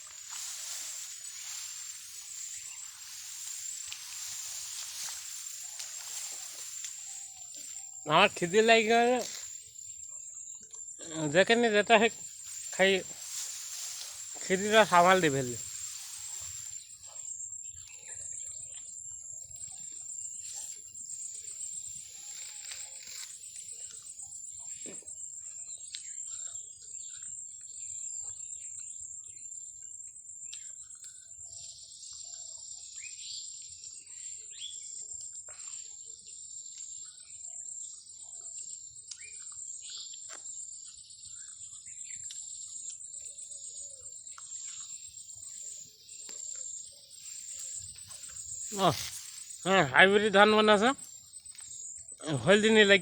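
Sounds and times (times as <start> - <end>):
high-pitched insect drone: 0.0 - 10.3, 11.0 - 18.6, 44.8 - 53.0
bird chirps: 0.0 - 26.7.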